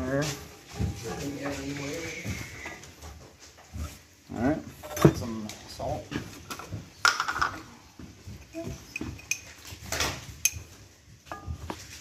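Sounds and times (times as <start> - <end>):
utensils and cookware clinking: 4.6 - 12.0.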